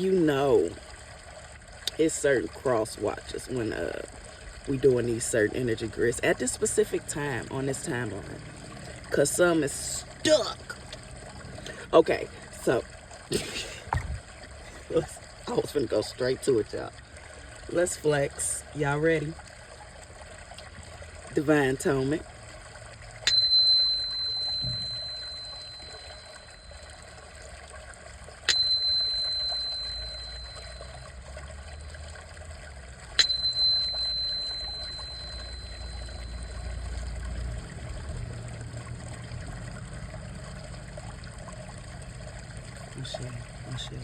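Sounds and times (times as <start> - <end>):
bamboo water fountain trickling: 0.0 - 44.0
small high-pitched bell ringing: 23.3 - 27.4, 28.5 - 32.0, 33.2 - 37.3.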